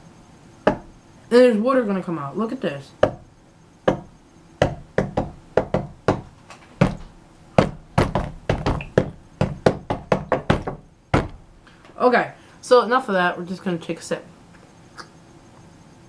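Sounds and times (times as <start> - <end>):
tapping on plastic water bottle: 3.9 - 11.4.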